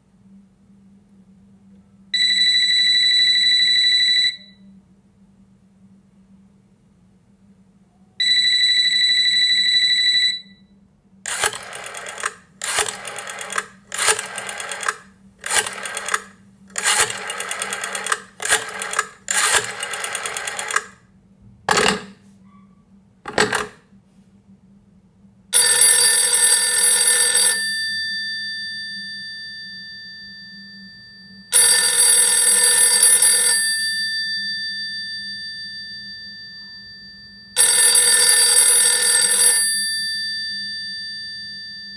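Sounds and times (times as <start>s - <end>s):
telephone bell ringing: 2.2s - 4.6s, 8.2s - 10.6s, 11.3s - 21.0s, 23.4s - 23.7s, 25.6s - 41.9s
telephone tone: 11.3s - 21.0s, 23.4s - 23.7s, 25.6s - 41.9s.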